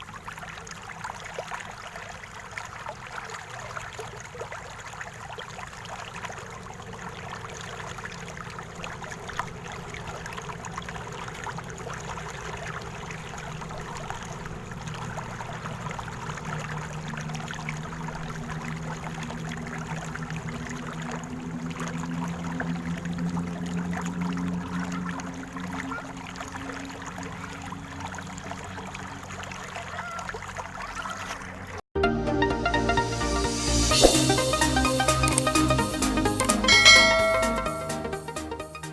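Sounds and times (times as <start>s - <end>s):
river water flowing: 0.0s - 31.9s, 33.1s - 38.4s
low hum: 33.2s - 36.0s, 36.6s - 38.2s.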